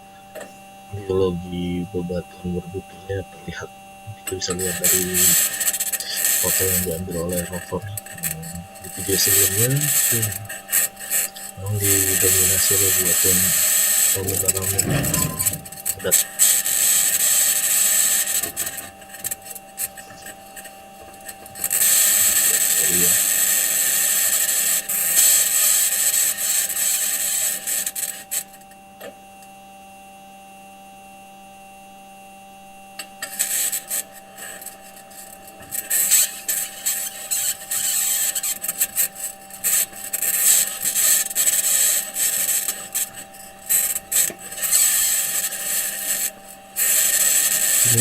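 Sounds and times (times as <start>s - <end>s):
steady hum: 0.0s - 28.9s, 32.5s - 48.0s
metal wheels scraping over rock: 14.2s - 16.1s.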